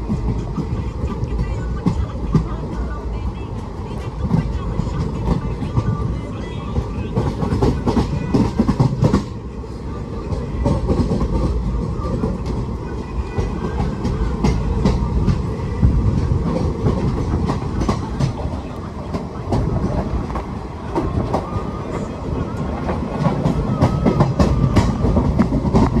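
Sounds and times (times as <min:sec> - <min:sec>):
train low rumble: 0:00.0 - 0:26.0
train wheels clicking over rail joints: 0:06.8 - 0:09.4, 0:10.3 - 0:26.0.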